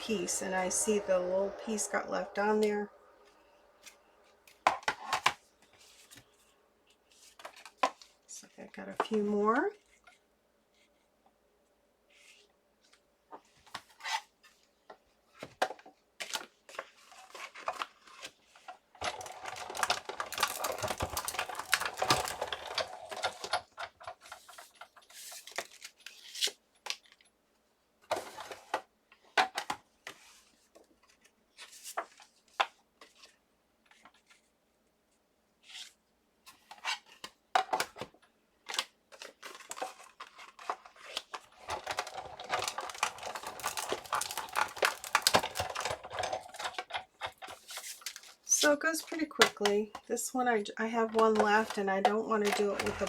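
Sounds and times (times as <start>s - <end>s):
plates cranked through rollers: 19.1s - 23.8s, 52.4s - 53.0s.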